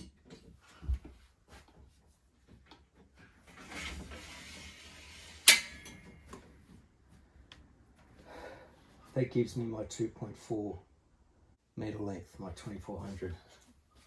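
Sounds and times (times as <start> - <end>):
metal arm scraping along frame: 3.5 - 6.2
sharp metal clunk: 5.5 - 6.3.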